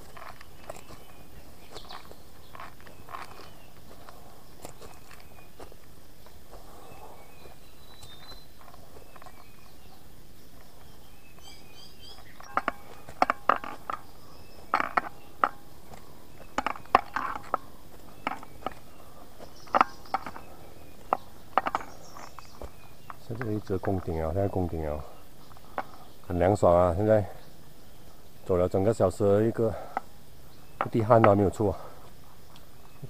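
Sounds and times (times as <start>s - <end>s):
footsteps on forest trail: 0.0s - 33.0s.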